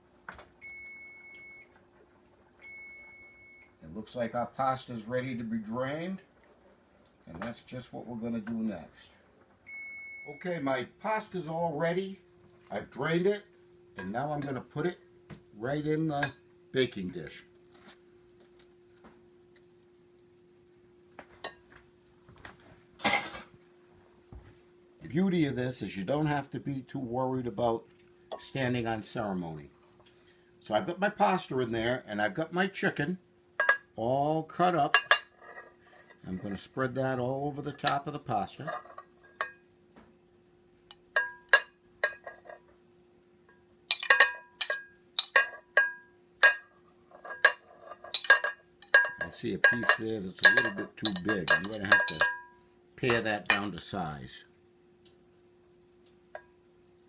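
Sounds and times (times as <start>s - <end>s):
utensil clinking on dish: 34.9s - 35.3s, 40.9s - 42.6s, 43.9s - 53.7s.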